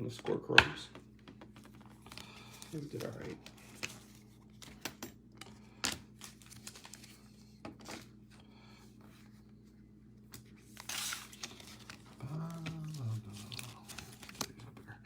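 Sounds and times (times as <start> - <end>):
card wrappers rustling: 1.3 - 8.3, 10.2 - 15.0
crinkly wrapper rustle: 1.4 - 4.8, 6.0 - 8.2, 10.4 - 15.0.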